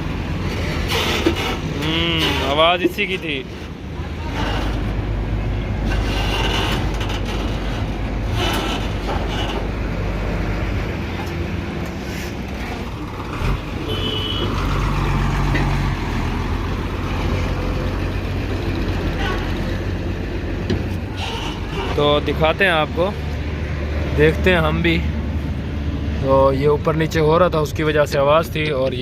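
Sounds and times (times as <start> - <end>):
truck diesel engine running: 0.0 - 29.0.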